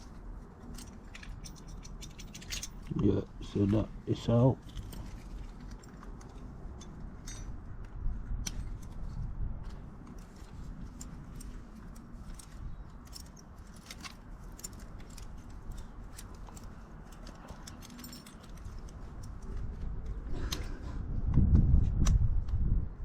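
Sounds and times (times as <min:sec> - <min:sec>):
metallic clicks of brake parts: 0:00.6 - 0:03.1.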